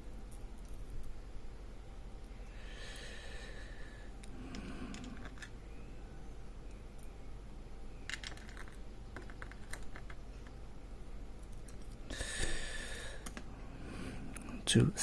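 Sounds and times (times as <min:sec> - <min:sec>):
small metal parts clicking: 0:08.1 - 0:10.6.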